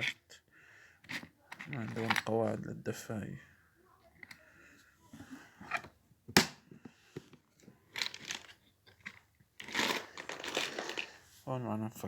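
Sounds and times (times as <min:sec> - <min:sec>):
tools rummaged in toolbox: 0:01.0 - 0:02.6, 0:07.2 - 0:11.3.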